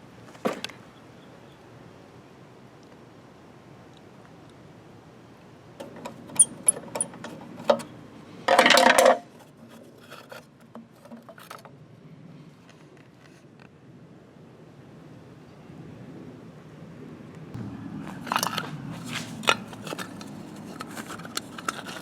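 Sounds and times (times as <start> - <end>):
metal parts and tools clinking: 5.8 - 7.9, 8.5 - 9.3, 18.1 - 22.0.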